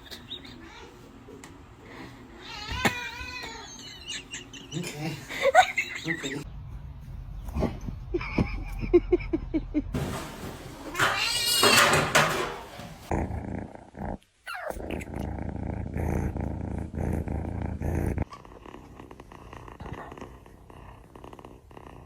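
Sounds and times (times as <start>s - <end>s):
cat purring: 13.0s - 22.0s.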